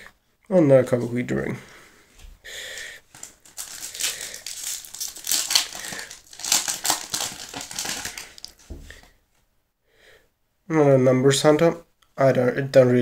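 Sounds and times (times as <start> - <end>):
foil wrapper crinkling: 3.1 - 8.7.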